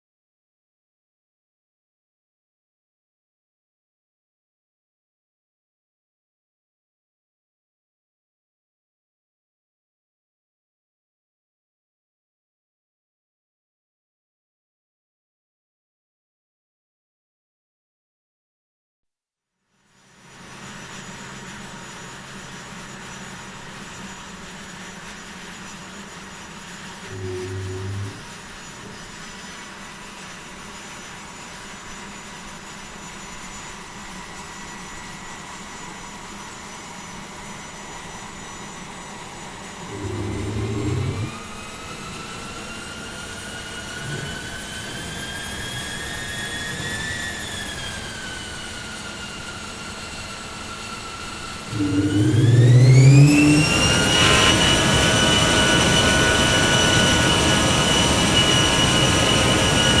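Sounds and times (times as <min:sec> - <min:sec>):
jet engine turbine whine: 0:20.2 - 1:00.0
jet engine rumble: 0:51.7 - 0:54.0.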